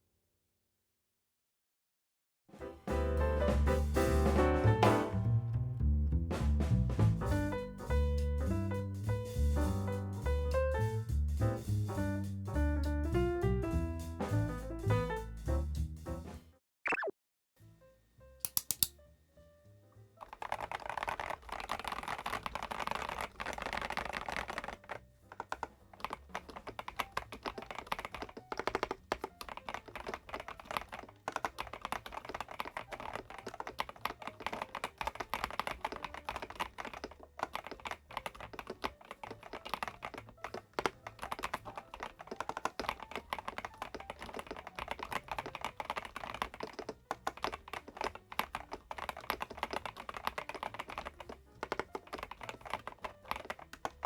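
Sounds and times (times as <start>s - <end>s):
fast mechanical keyboard typing: 20.2s - 54.0s.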